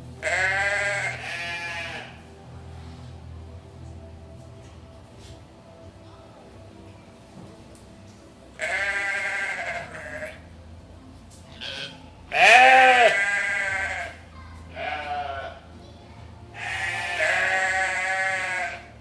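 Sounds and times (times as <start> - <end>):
goats bleating: 0.2 - 2.2, 8.6 - 10.4, 11.6 - 15.6, 16.6 - 18.9.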